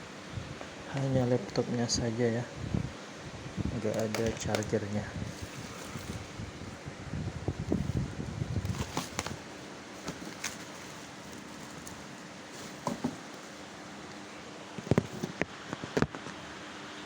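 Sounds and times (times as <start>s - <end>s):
laptop rustling and rubbing: 5.2s - 6.7s, 7.6s - 13.7s.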